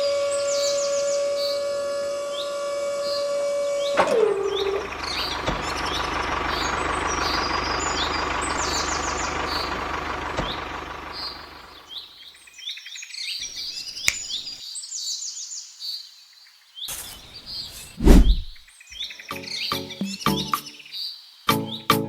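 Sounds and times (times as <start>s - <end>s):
birds chirping: 4.5s - 9.8s, 10.4s - 15.5s, 16.8s - 21.9s
whoosh falling in pitch: 18.0s - 18.6s.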